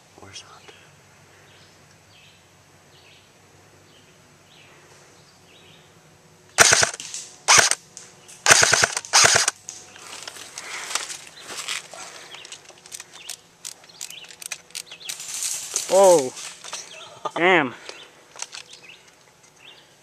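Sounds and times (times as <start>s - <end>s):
airsoft gun full-auto bursts: 6.6s - 7.8s, 8.4s - 9.6s.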